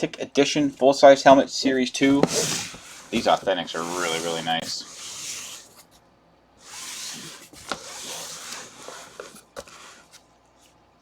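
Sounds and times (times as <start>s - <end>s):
cardboard box rubbing and sliding: 2.0s - 5.9s, 6.6s - 10.2s.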